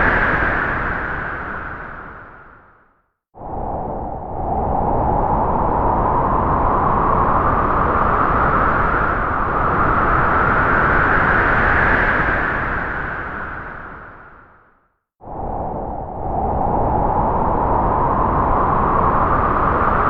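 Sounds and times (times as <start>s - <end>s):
gust of wind: 3.4s - 14.2s, 15.2s - 20.0s.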